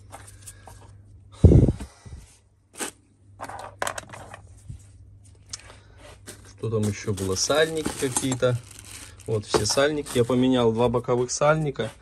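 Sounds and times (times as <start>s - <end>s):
parts crunching and scraping: 2.7s - 12.0s.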